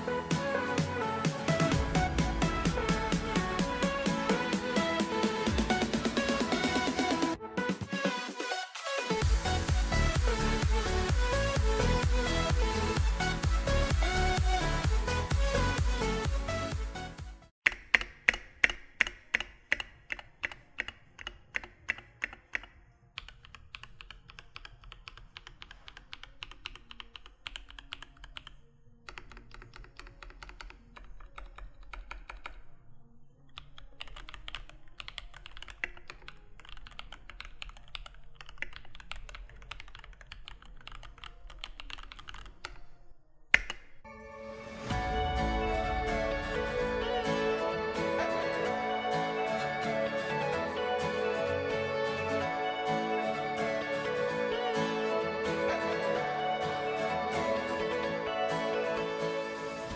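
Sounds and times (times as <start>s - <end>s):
mechanical keyboard typing: 17.7s - 32.6s, 33.6s - 42.9s.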